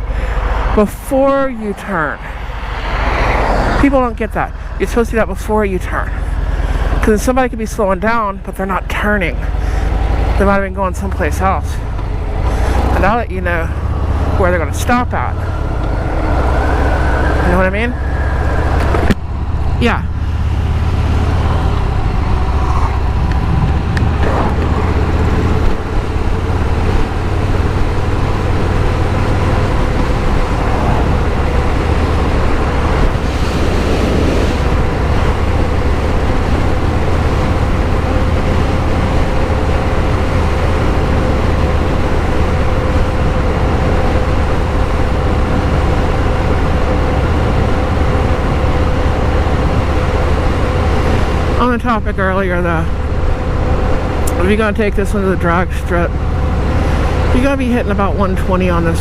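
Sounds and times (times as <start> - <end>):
motorcycle engine rumbling: 0.0 - 59.0.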